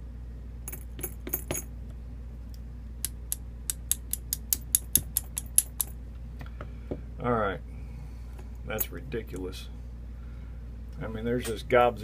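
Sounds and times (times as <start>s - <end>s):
metallic clicks and taps: 2.5s - 5.9s.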